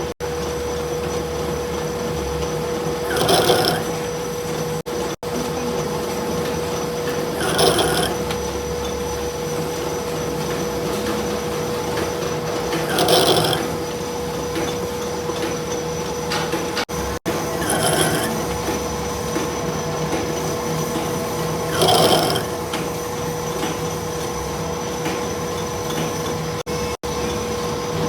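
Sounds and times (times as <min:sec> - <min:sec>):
workshop machine humming: 0:00.0 - 0:28.0
metal being rasped: 0:02.9 - 0:04.1, 0:07.1 - 0:08.4, 0:12.4 - 0:14.0, 0:17.3 - 0:23.0.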